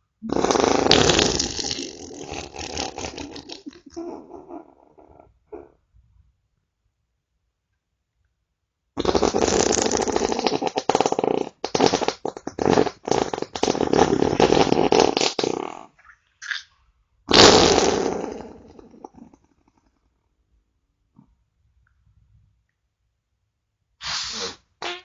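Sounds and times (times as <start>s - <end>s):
farts: 0.2s - 4.6s, 9.0s - 16.6s, 17.3s - 19.4s, 24.0s - 25.0s.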